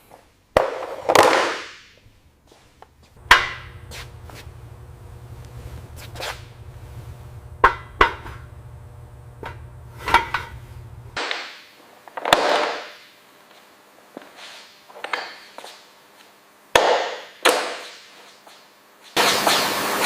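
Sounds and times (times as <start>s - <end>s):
low steady hum: 2.2s - 11.2s
hand tools knocking: 3.2s - 3.8s, 7.6s - 8.4s
rushing scraping noises: 3.6s - 7.6s.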